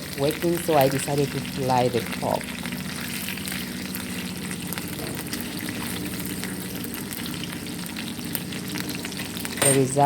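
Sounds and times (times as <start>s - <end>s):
pork sizzling in a pan: 0.0s - 10.0s.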